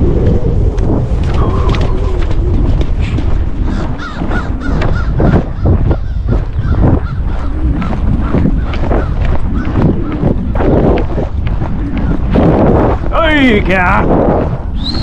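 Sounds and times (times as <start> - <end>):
wind rumble on microphone: 0.0 - 15.0
crows cawing: 3.6 - 10.7.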